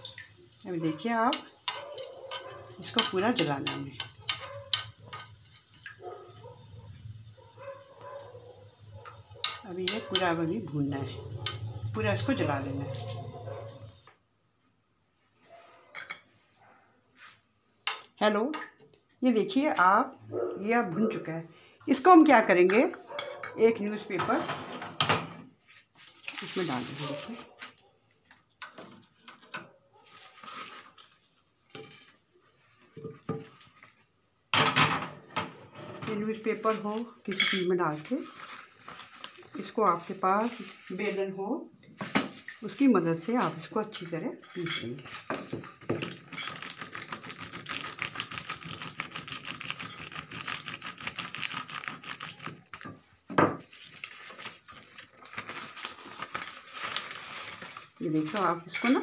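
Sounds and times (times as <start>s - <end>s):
metal utensil scraping on griddle: 1.3s - 8.0s, 8.8s - 14.0s
paper rustling: 25.7s - 28.5s, 30.0s - 31.5s, 37.9s - 41.2s, 45.1s - 52.8s, 53.6s - 59.0s.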